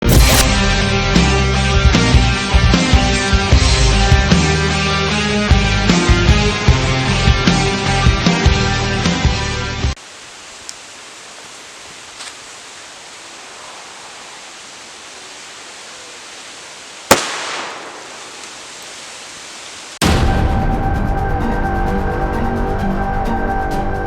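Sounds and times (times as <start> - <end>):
grenade bang: 0.0 - 1.3, 17.1 - 18.4
background music: 0.0 - 10.0, 20.0 - 24.0
outdoor hiss: 9.9 - 20.0.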